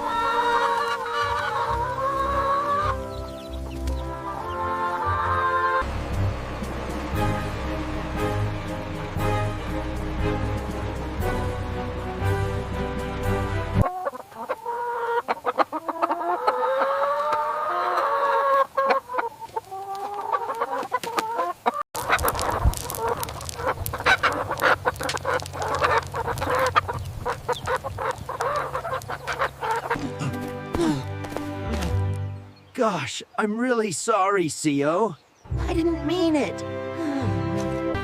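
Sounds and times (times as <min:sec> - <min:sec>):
chickens clucking and squawking: 0:00.0 - 0:09.1, 0:13.2 - 0:30.6
music: 0:00.1 - 0:13.9, 0:29.8 - 0:32.7, 0:35.5 - 0:38.0.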